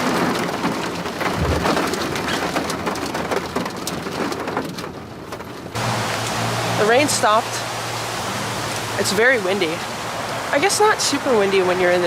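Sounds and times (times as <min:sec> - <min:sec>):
rain falling: 0:00.0 - 0:12.0
low thump: 0:01.2 - 0:02.3.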